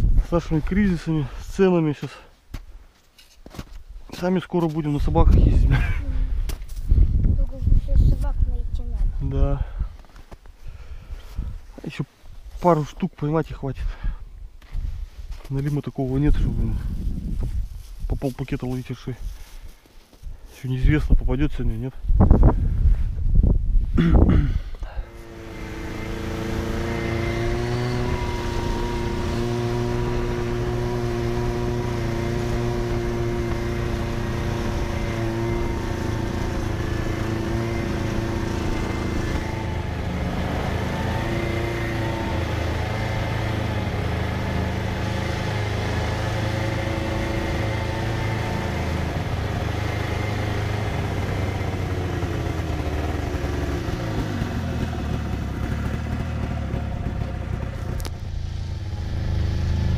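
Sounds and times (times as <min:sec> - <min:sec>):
snowmobile engine running: 0:24.3 - 0:59.9.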